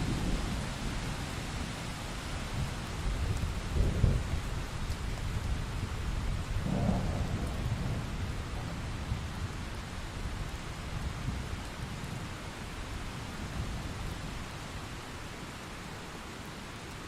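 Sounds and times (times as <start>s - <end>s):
low rolling thunder: 0.0s - 1.7s, 2.4s - 12.3s
steady rain: 0.0s - 17.0s.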